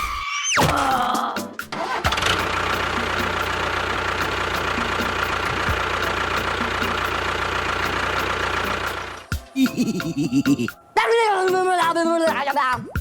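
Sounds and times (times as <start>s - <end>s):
engine idling with knocking tick: 2.0s - 9.5s.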